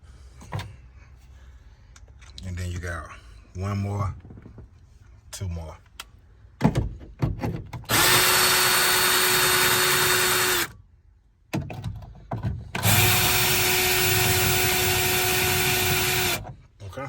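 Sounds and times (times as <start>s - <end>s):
cordless drill running: 7.9s - 10.8s, 12.8s - 16.4s.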